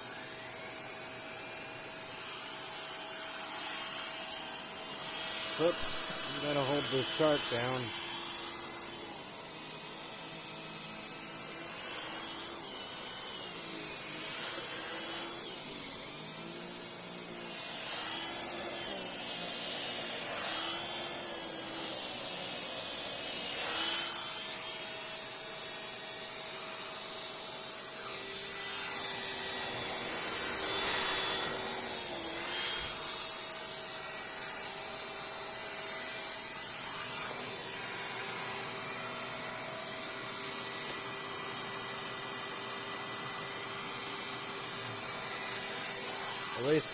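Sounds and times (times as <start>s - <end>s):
vacuum motor whine: 0.0s - 46.9s
turbo brush spinning hum: 27.2s - 39.1s.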